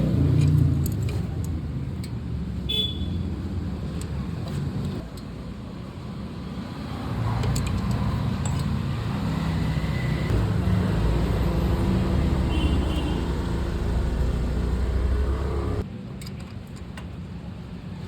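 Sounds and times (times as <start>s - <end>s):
motorcycle engine running: 8.9s - 15.8s.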